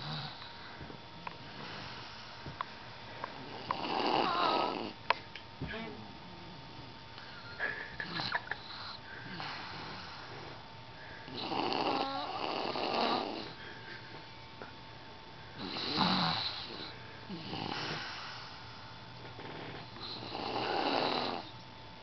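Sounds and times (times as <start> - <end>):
person snoring heavily: 0.0 - 0.4, 3.4 - 5.0, 8.0 - 10.6, 11.3 - 13.6, 15.6 - 18.6, 19.5 - 21.5.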